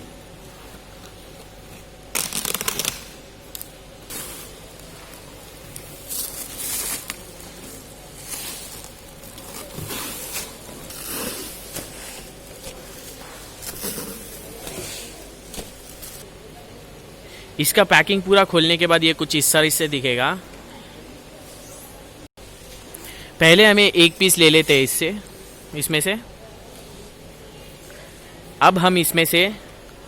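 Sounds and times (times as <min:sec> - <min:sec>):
packaging crackling and rustling: 0:04.8 - 0:16.2.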